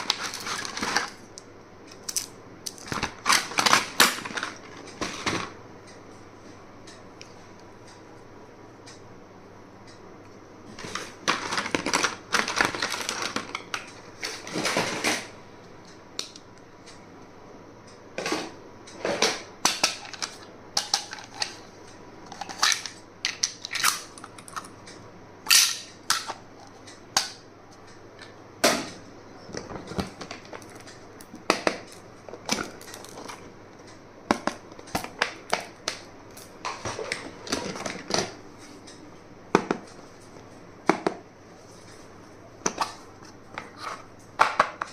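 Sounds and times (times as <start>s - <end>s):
packaging being handled: 10.8s - 13.8s.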